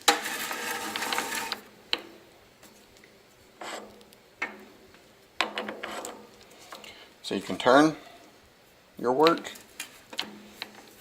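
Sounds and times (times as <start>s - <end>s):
metallic scraping rattle: 0.0s - 1.6s.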